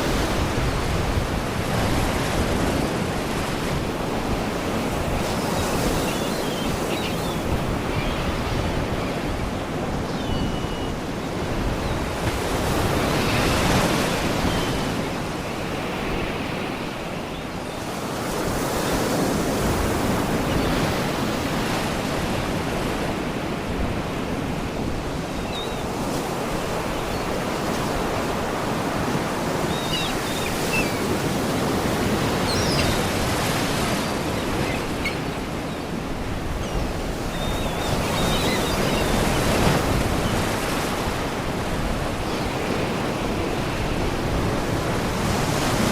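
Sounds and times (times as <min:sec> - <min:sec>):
seagull cries: 0:29.6 - 0:40.5.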